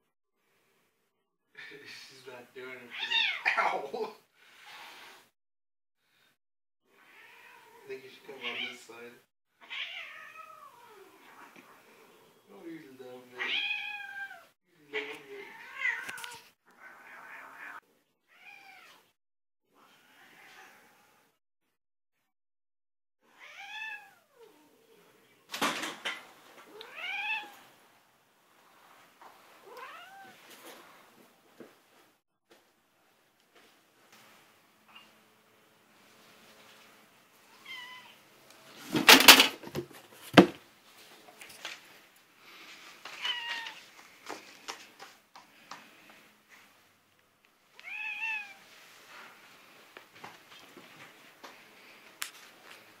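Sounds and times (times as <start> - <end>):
cat meowing: 2.9 - 3.7, 9.6 - 11.2, 13.4 - 19.1, 23.3 - 24.6, 26.7 - 27.6, 29.6 - 30.4, 37.5 - 38.2, 43.2 - 43.8, 47.8 - 48.7.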